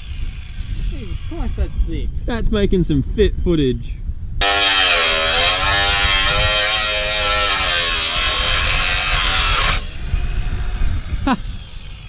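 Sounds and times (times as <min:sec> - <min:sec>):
power tool cutting metal: 0:00.0 - 0:01.7, 0:04.4 - 0:12.0.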